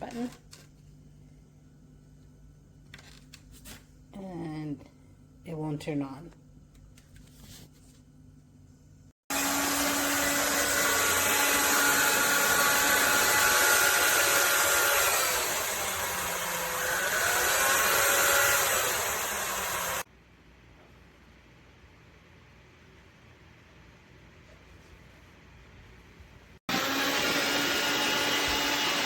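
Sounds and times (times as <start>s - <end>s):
vacuum cleaner motor whine: 9.3s - 20.1s, 26.7s - 29.0s.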